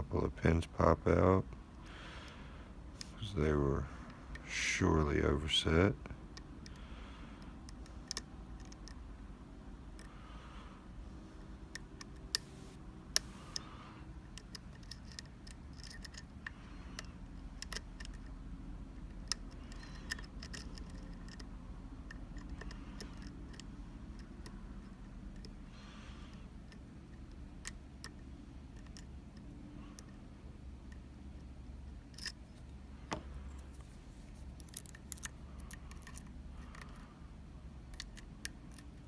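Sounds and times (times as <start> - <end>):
lock picks clicking in a lock: 7.6 - 9.0, 14.2 - 18.3, 19.0 - 25.6, 26.6 - 30.2, 30.8 - 32.5, 34.6 - 37.0, 37.8 - 39.0.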